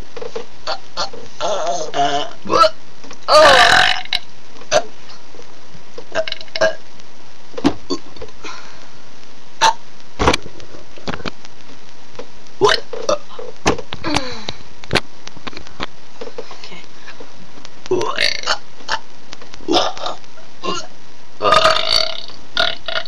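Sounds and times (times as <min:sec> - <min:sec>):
person burping: 0:00.6 - 0:04.9, 0:06.1 - 0:06.8, 0:12.6 - 0:14.5, 0:17.9 - 0:19.0, 0:19.7 - 0:23.0.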